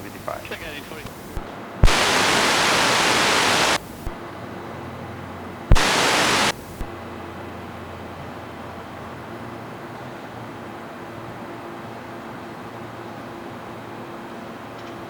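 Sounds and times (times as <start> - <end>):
radio static bursts: 0.6 - 4.2, 5.7 - 6.9.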